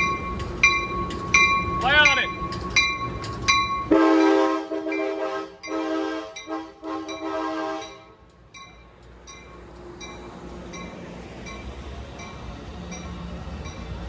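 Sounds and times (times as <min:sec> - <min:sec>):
bell dinging: 0:00.0 - 0:03.9
train horn blasts: 0:03.9 - 0:08.2.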